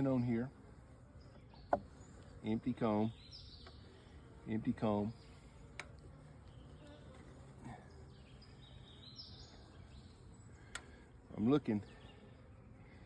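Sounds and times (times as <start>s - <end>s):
honeybees buzzing: 0.0s - 13.0s.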